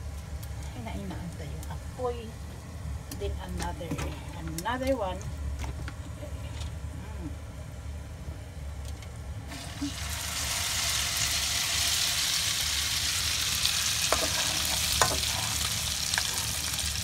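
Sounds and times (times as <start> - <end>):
omelette sizzling in hot oil: 9.5 - 17.0.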